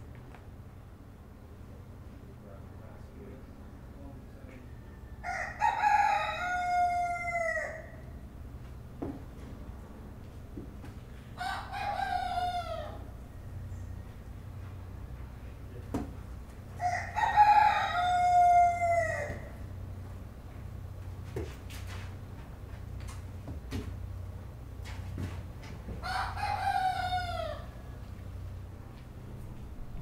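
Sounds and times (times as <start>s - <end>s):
steady low hum: 0.0s - 30.0s
rooster crowing: 4.6s - 8.2s, 11.4s - 14.1s, 16.8s - 19.8s, 26.0s - 28.0s.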